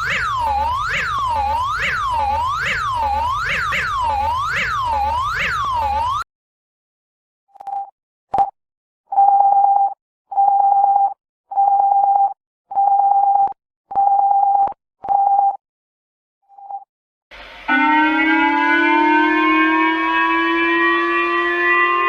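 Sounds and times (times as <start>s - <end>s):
emergency alert alarm beeping: 0.0s - 6.3s, 17.7s - 22.0s.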